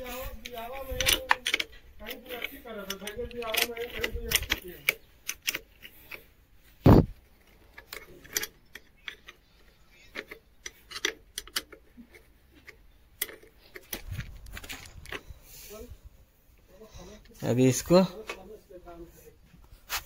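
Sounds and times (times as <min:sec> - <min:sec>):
metal tools clicking and scraping: 0:00.0 - 0:15.5
heavy thump: 0:06.8 - 0:07.2.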